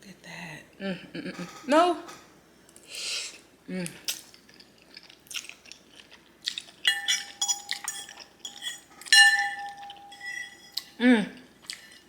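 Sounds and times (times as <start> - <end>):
fork scraping and clinking bowl: 6.9 - 11.0.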